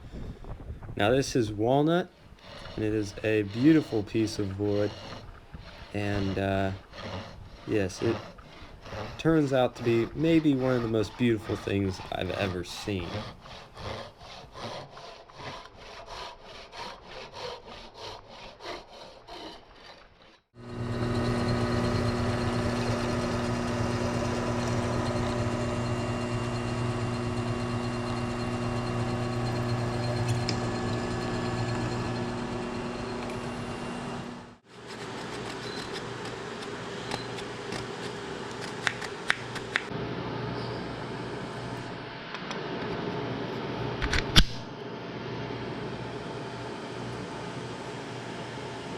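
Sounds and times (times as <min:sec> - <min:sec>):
hand saw strokes through wood: 0:01.0 - 0:34.0, 0:34.6 - 0:39.6
power tool humming: 0:01.6 - 0:14.7, 0:20.6 - 0:42.0.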